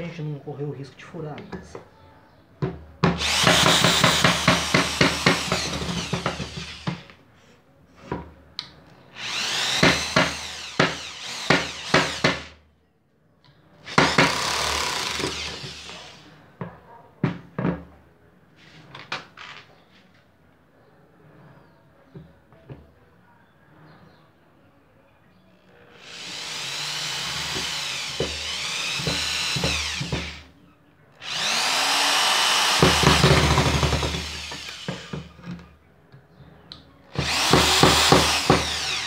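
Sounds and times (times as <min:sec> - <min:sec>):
drill driving screws into wood: 0:03.1 - 0:07.2, 0:09.2 - 0:12.6, 0:13.9 - 0:16.2, 0:26.0 - 0:30.4, 0:31.2 - 0:35.5, 0:37.1 - 0:39.0.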